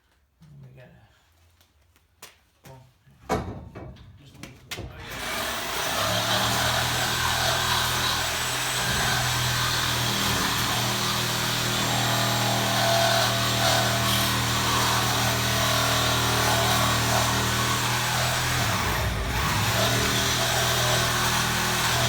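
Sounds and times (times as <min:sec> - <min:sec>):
power saw cutting steel: 0:05.0 - 0:22.0.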